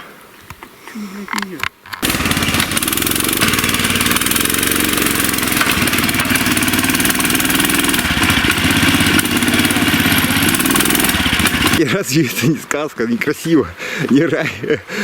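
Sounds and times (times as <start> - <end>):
outboard motor running: 2.0 - 11.8.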